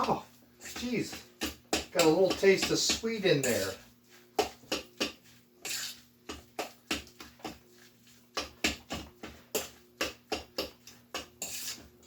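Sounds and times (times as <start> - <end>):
utensil knocking against bowl: 0.0 - 3.2.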